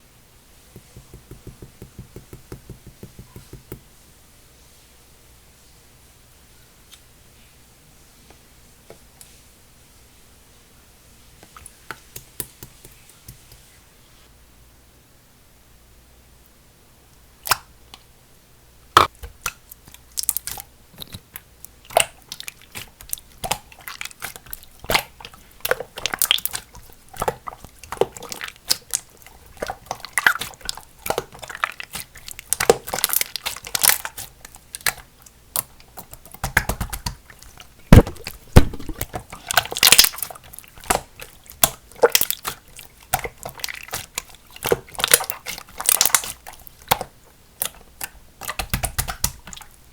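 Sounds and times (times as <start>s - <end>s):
slime squishing and popping: 21.8s - 49.7s
slime snapping: 37.9s - 49.6s.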